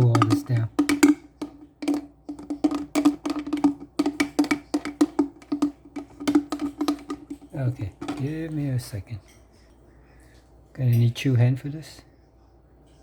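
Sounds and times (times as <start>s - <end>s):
hollow container knocking: 0.0s - 8.7s.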